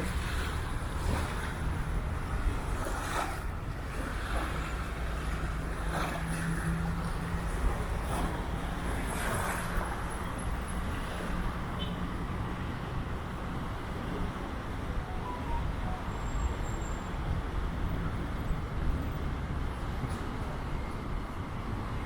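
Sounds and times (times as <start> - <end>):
distant road traffic rumble: 0.0 - 22.0
low engine hum: 0.0 - 22.0.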